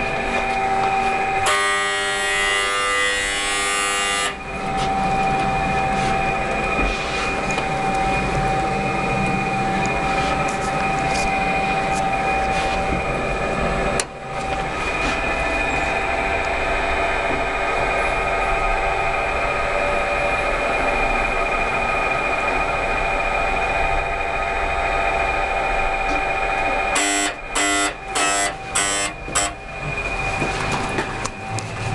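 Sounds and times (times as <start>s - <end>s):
elevator hum and whine: 0.0s - 31.9s
short buzzer beeps: 1.4s - 4.4s, 26.9s - 29.6s.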